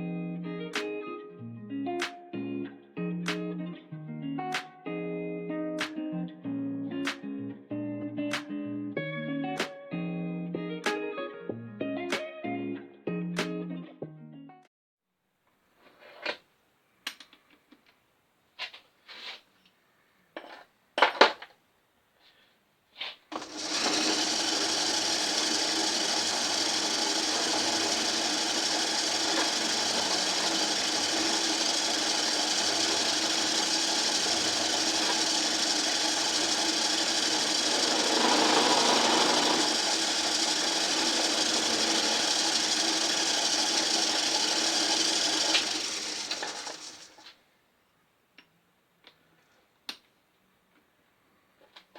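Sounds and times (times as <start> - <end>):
electric power tool running: 23.3 - 47.3
grinding on metal: 23.4 - 47.2.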